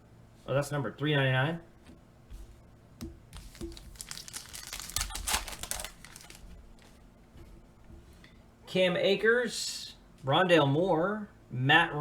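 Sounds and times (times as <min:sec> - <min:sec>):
wrapper tearing and crinkling: 0:03.4 - 0:06.9.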